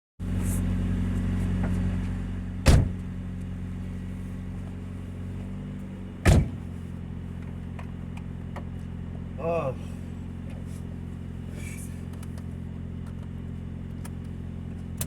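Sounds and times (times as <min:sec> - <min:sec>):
car engine idling: 0:00.2 - 0:15.0
sharp thumps: 0:06.3 - 0:06.7.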